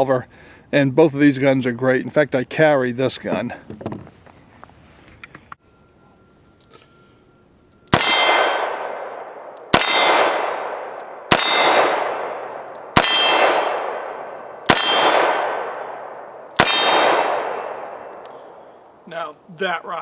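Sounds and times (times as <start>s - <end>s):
steel target ringing: 7.9s - 18.2s
revolver gunshots: 7.9s - 19.0s.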